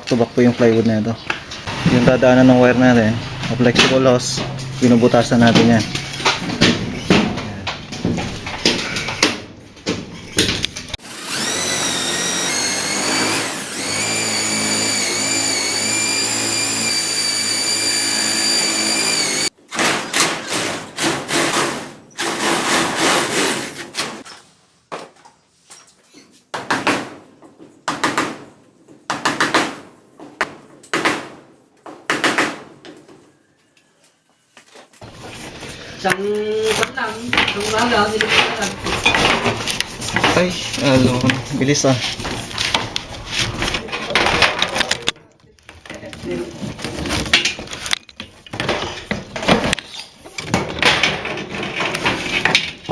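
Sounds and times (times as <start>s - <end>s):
electric drill whining: 11.0s - 19.5s.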